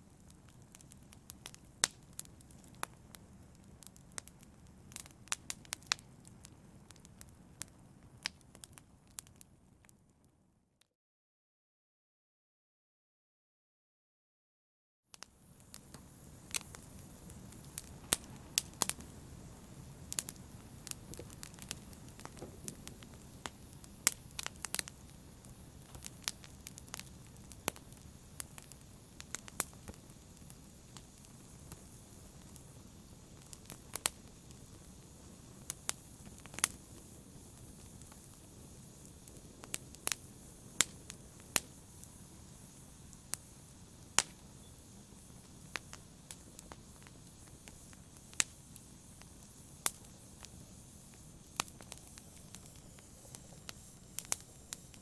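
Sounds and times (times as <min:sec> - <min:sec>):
wood fire crackling and popping: 0:00.0 - 0:10.2, 0:15.2 - 0:55.0.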